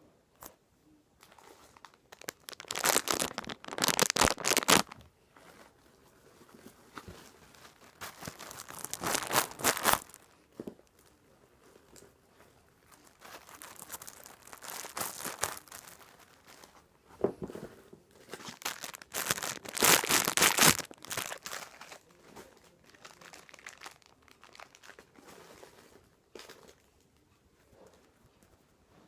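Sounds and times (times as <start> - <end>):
plastic packaging crinkling: 1.2 - 5.6, 6.3 - 11.1, 12.8 - 16.9, 18.2 - 26.9.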